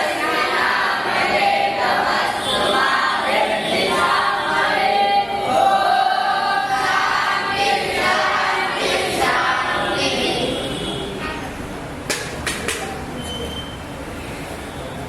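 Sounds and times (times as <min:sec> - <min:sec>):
voices chanting in unison: 0:00.0 - 0:10.6.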